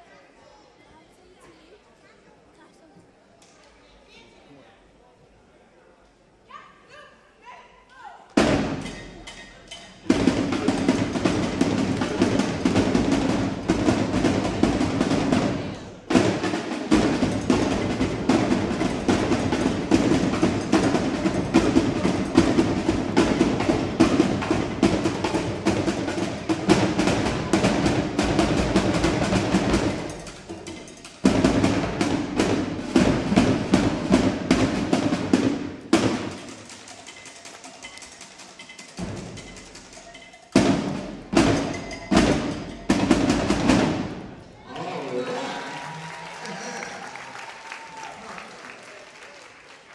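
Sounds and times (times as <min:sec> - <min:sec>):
snare and bass drums playing: 0:08.4 - 0:44.4.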